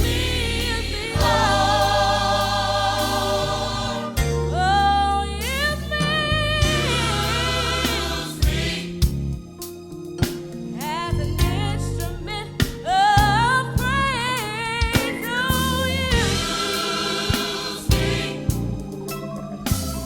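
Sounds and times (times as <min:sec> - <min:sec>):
bass line: 0:00.0 - 0:09.5, 0:11.1 - 0:14.4, 0:15.4 - 0:16.7, 0:17.9 - 0:20.0.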